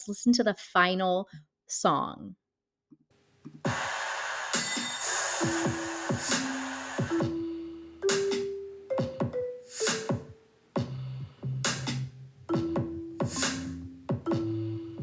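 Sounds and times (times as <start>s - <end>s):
drum-machine beat: 3.7s - 15.0s
marimba melody: 5.4s - 10.4s, 12.5s - 15.0s
held keyboard notes: 5.4s - 10.5s, 12.4s - 15.0s.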